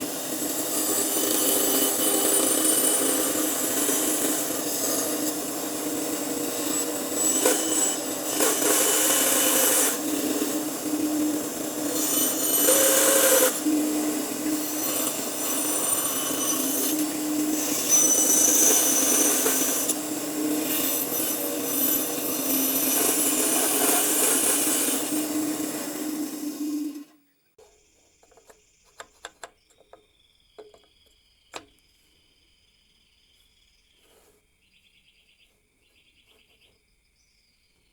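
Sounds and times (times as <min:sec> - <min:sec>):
power tool cutting wood: 0:00.0 - 0:27.2.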